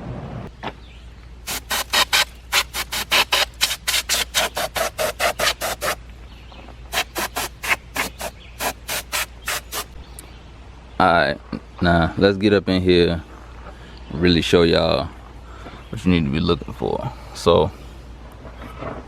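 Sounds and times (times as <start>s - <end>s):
compressed air puffs: 1.5s - 6.0s, 6.9s - 10.0s.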